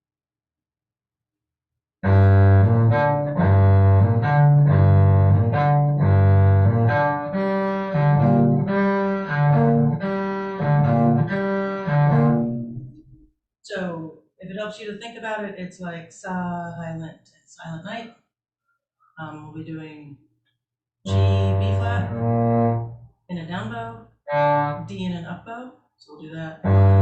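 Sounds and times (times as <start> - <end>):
cello bowing low notes: 2.0 - 13.0, 21.1 - 23.1, 24.3 - 25.0, 26.6 - 27.0.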